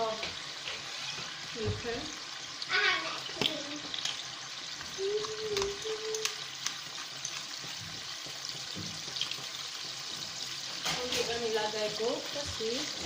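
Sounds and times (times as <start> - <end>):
chicken sizzling in oil: 0.0 - 13.0
utensil clicking against pan: 3.3 - 11.6.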